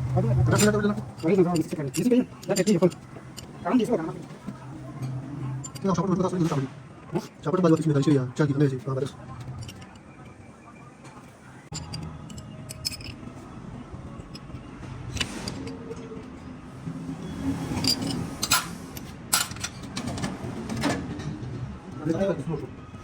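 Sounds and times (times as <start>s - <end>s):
low steady hum: 0.0s - 20.0s
metal tools clinking: 0.4s - 6.0s, 9.4s - 10.1s, 11.7s - 13.3s, 17.7s - 19.9s.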